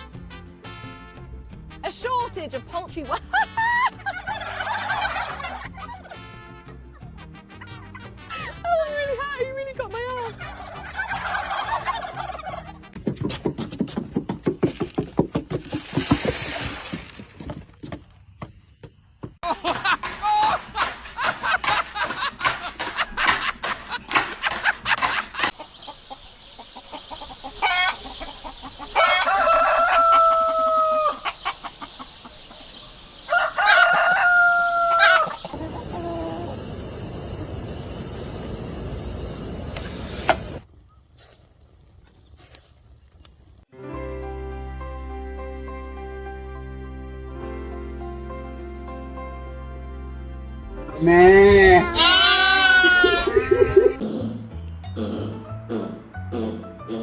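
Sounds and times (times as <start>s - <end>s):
chickens clucking: 10.4s - 13.6s, 19.4s - 36.6s
rooster crowing: 28.8s - 31.4s, 33.2s - 35.6s.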